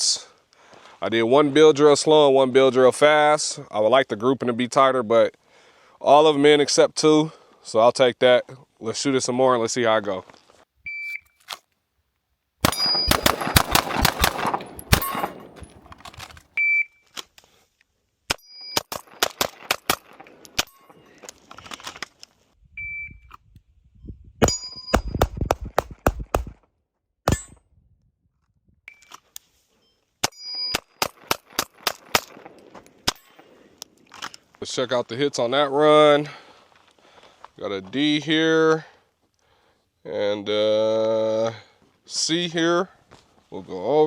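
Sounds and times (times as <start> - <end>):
short electronic beeps: 10.9 - 11.4, 16.6 - 17.0, 22.8 - 23.3
rapid pistol shots: 12.6 - 16.0, 18.8 - 20.7, 25.0 - 26.6, 30.8 - 32.6.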